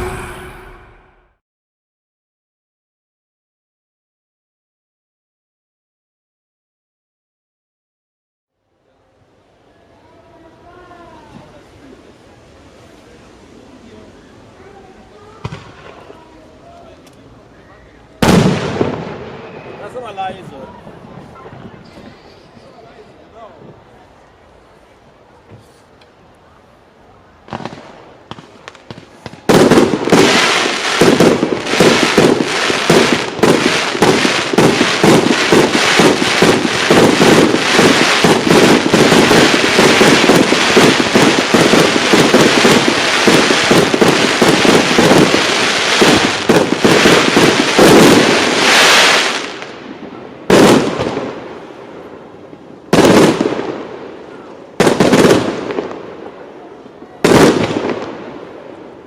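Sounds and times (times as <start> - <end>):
single loud firework bangs: 18.2 - 19.7, 27.5 - 49.7, 50.5 - 51.4, 52.9 - 53.9, 54.8 - 56.0, 57.2 - 58.2
rapid fireworks barrage: 18.2 - 20.2, 27.4 - 52.2, 52.8 - 56.3, 57.2 - 58.8.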